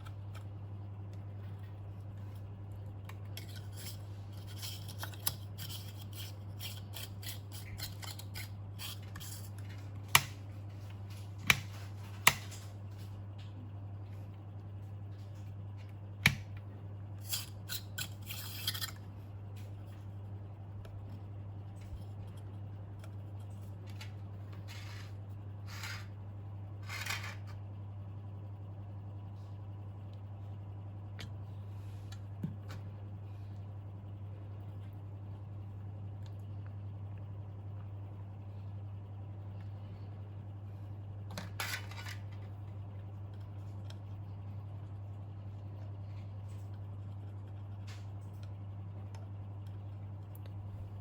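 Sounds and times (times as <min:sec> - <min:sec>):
steady low hum: 0:00.0 - 0:51.0
light scraping and snipping: 0:03.1 - 0:10.4, 0:17.2 - 0:19.0.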